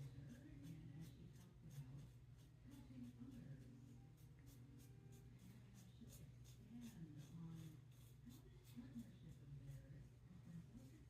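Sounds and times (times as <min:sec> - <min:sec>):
razor scraping stubble: 0:00.0 - 0:10.1.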